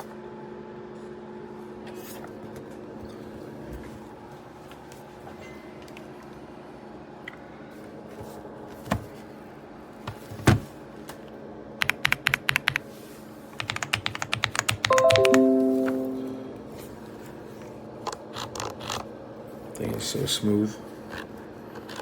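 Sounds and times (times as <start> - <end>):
rapid keyboard keystrokes: 11.8 - 12.8, 13.6 - 15.3
sustained musical notes: 14.9 - 16.7.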